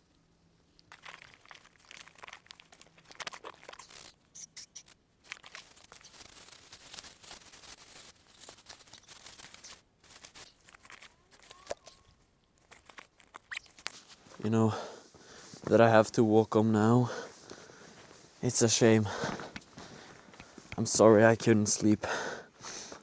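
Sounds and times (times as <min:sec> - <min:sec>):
fabric and gear rustling: 0:03.9 - 0:15.7.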